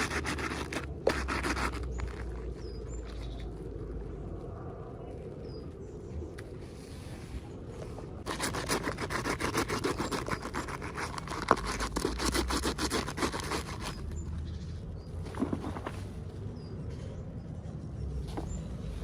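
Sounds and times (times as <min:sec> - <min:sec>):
packaging crinkling and scraping: 0:00.0 - 0:03.5, 0:08.3 - 0:14.2.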